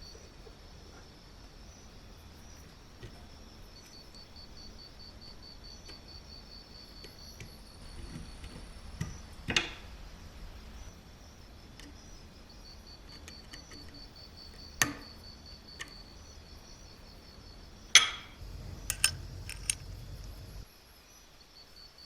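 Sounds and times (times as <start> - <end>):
clicks of small hard objects: 18.0 - 20.6
faint high pulsing chirp: 18.4 - 20.6.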